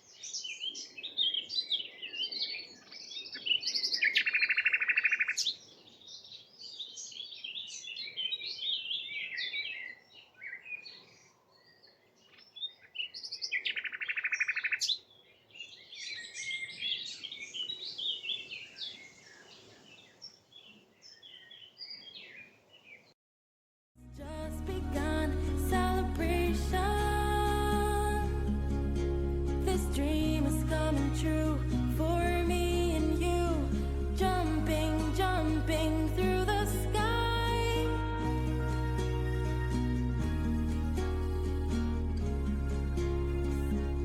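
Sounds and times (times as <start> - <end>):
small birds chirping and warbling: 0.0 - 23.1.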